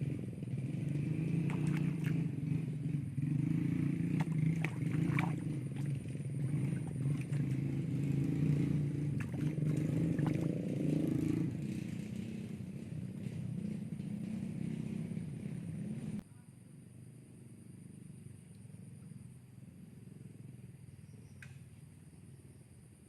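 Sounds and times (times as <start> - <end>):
small engine running: 0.0 - 16.2.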